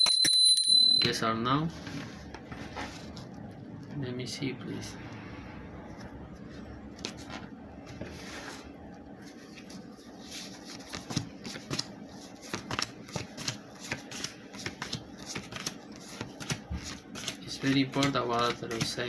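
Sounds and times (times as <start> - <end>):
cards rustling: 9.4 - 19.0
cards clicking and slapping: 10.8 - 19.0.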